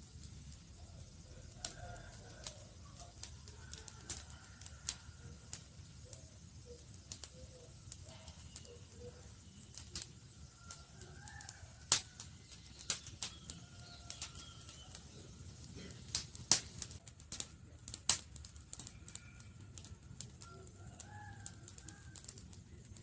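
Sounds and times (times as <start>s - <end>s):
campfire crackling and popping: 0.0s - 23.0s.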